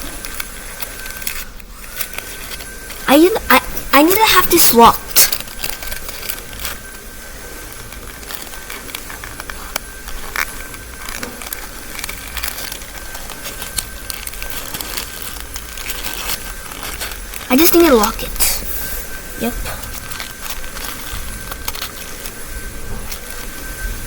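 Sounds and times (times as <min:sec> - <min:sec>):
small paper clicks: 0:00.0 - 0:03.1, 0:05.1 - 0:24.0
paper rustling and crackling: 0:00.0 - 0:24.0.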